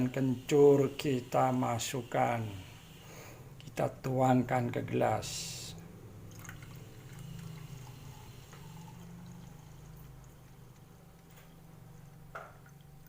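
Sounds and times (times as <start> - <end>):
liquid poured into a glass: 6.2 - 11.3.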